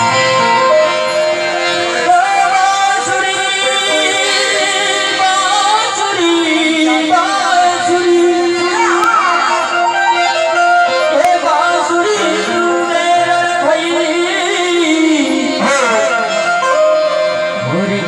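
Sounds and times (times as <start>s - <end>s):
held instrumental notes: 0.0s - 18.0s
person singing devotional song: 1.8s - 9.7s, 11.0s - 16.2s.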